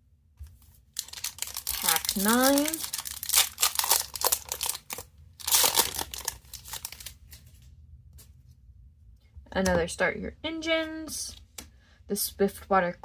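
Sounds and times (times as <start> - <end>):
plastic wrapper crinkling and tearing: 0.9 - 7.4.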